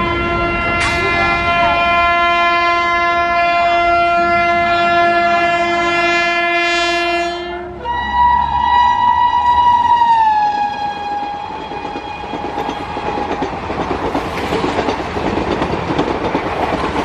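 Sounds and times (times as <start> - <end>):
locomotive horn blasts: 0.0 - 13.4
passing train rumble: 0.0 - 17.0.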